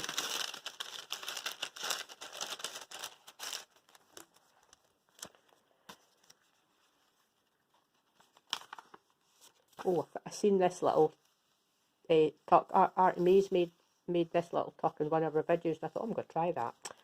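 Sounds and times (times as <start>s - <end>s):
paper pages rustling: 0.0s - 10.2s.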